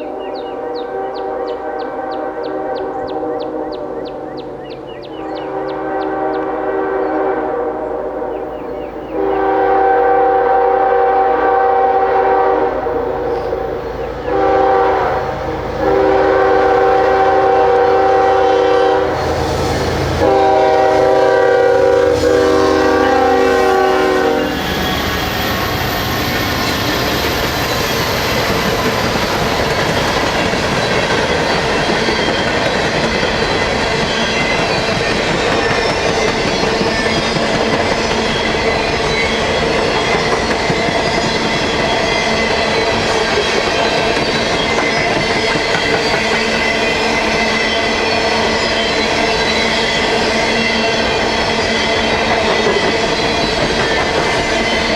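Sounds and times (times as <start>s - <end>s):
train horn blasts: 0.0s - 4.1s, 5.2s - 28.2s
train wheels rumbling on rail: 0.0s - 54.9s.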